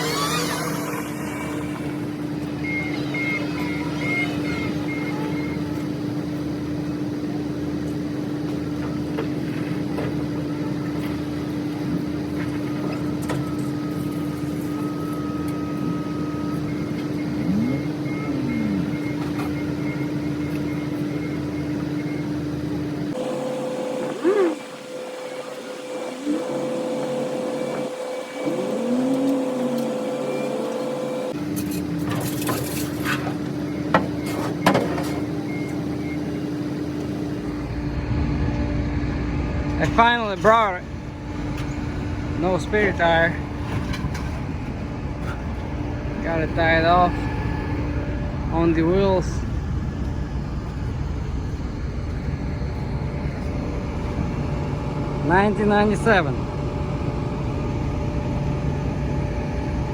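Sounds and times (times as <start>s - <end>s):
reversing alarm beeping: 0.0s - 6.1s, 12.7s - 31.4s, 39.9s - 56.6s
high-toned hum: 0.0s - 6.4s, 12.8s - 21.9s, 23.1s - 31.4s, 37.4s - 59.9s
vehicle engine idling: 0.0s - 31.4s, 35.3s - 59.9s.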